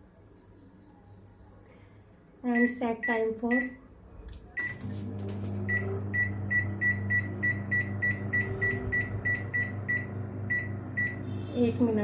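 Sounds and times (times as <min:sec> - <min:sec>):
microwave control panel beeps: 0:02.5 - 0:03.8, 0:04.6 - 0:11.3
low hum: 0:05.0 - 0:12.0.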